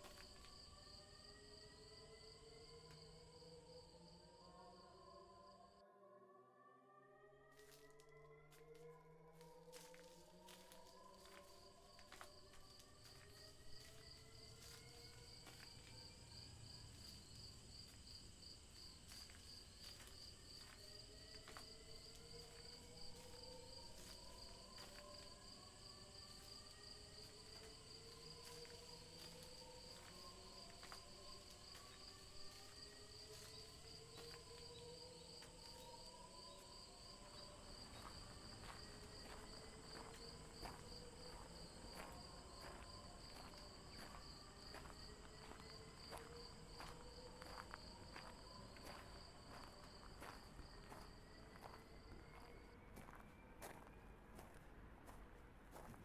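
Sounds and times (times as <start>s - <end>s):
cricket trill: 9.8s - 53.8s.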